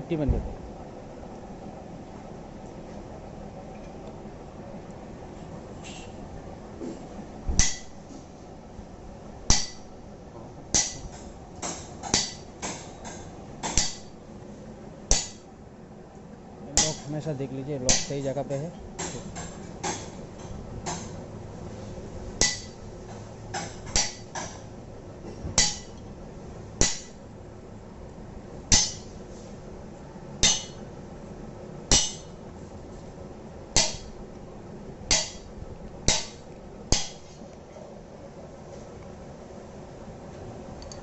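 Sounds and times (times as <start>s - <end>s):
hammer striking metal: 7.6s - 8.0s, 9.5s - 9.9s, 10.7s - 14.1s, 15.1s - 15.4s, 16.8s - 17.1s, 17.9s - 18.2s, 22.4s - 22.8s, 23.6s - 24.6s, 25.6s - 26.0s, 26.8s - 27.2s, 28.7s - 29.1s, 30.4s - 30.8s, 31.9s - 32.4s, 33.8s - 34.2s, 35.1s - 35.5s, 36.1s - 37.3s.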